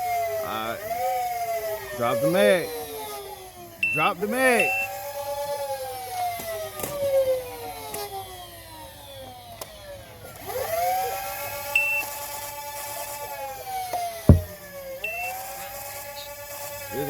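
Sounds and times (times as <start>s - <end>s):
loud thump: 14.3s - 14.5s.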